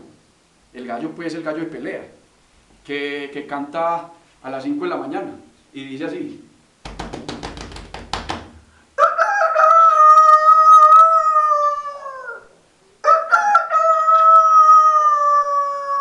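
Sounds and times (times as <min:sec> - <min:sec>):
man imitating rooster crow: 0:09.0 - 0:16.0.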